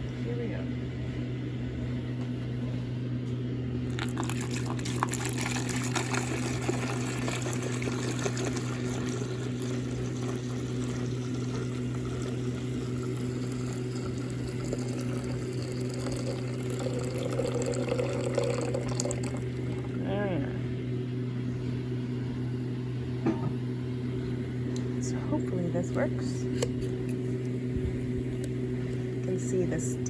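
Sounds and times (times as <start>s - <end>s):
steady low hum: 0.0s - 30.0s
water pouring into container: 3.9s - 20.0s.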